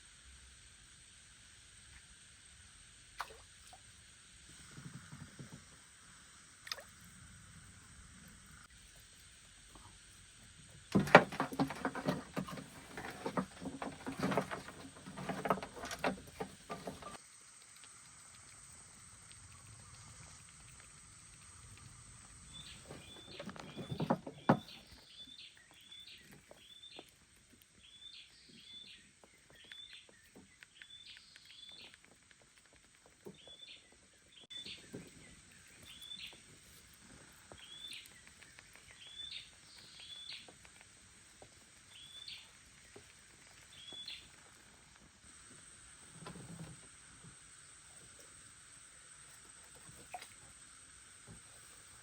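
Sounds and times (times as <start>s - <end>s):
outdoor background noise: 0.0s - 52.0s
bird chirping: 37.5s - 40.6s.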